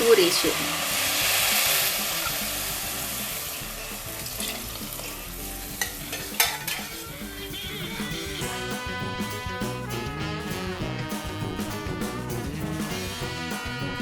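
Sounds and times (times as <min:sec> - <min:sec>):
water sizzling in a pot: 0:00.0 - 0:10.0.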